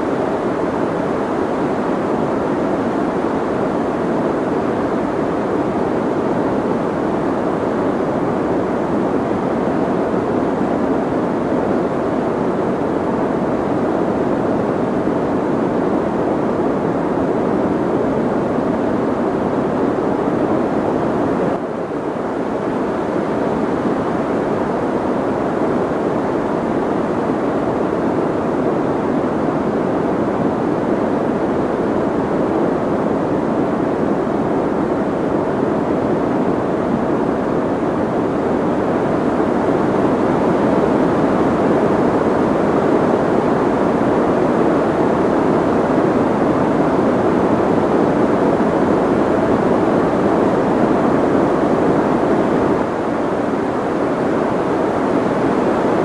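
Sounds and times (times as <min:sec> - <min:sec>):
soft muffled white noise: 0:00.0 - 0:56.0.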